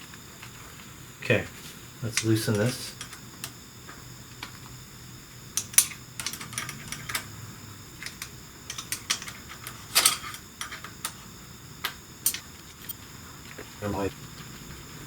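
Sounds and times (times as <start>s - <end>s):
sharp metal clicks: 5.6s - 7.3s, 11.8s - 13.0s.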